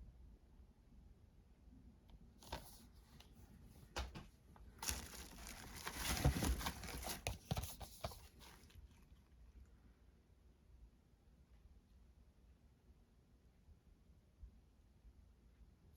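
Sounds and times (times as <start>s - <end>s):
packaging crinkling: 4.8s - 9.1s.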